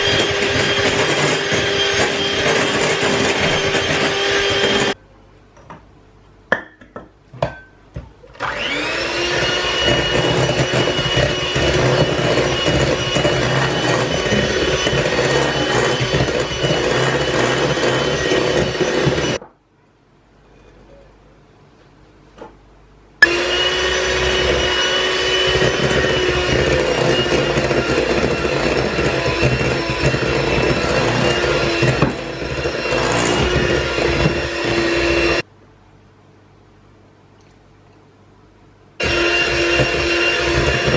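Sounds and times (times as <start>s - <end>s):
kitchen appliance motor running: 0.0s - 5.0s, 8.4s - 19.4s, 23.2s - 35.4s, 39.0s - 40.9s.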